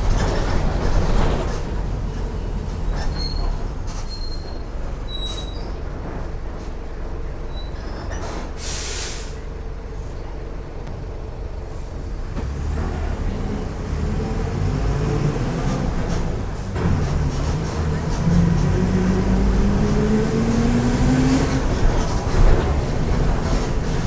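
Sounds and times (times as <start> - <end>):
bus diesel engine running: 0.0 - 24.0
high squeaks: 2.8 - 5.8
compressed air hiss: 8.6 - 9.4.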